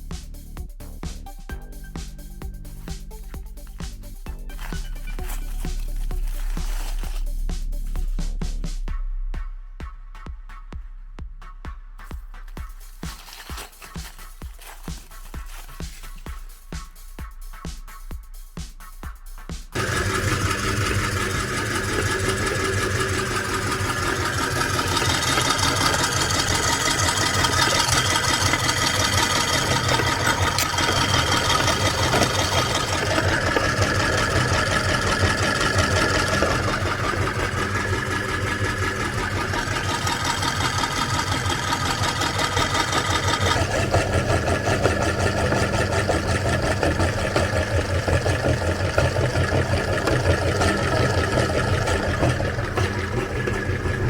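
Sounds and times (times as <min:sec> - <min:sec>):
electric meat grinder motor: 0:19.8 - 0:54.0.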